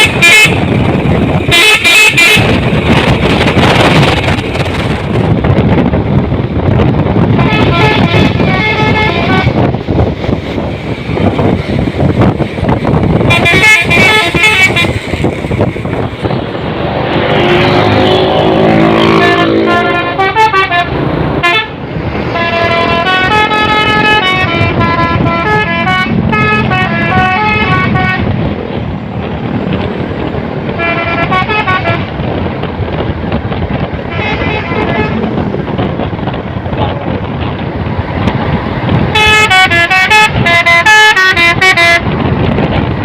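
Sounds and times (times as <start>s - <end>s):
musical truck horn melodies: 0.0s - 0.6s, 1.5s - 2.6s, 7.3s - 9.7s, 13.2s - 15.0s, 17.3s - 28.4s, 30.8s - 32.1s, 34.1s - 35.3s, 39.1s - 42.2s
vehicle low rumble: 14.0s - 39.2s.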